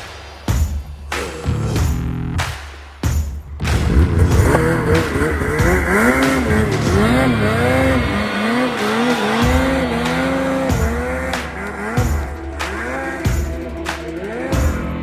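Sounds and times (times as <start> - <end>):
snowmobile engine revving: 3.7 - 14.6.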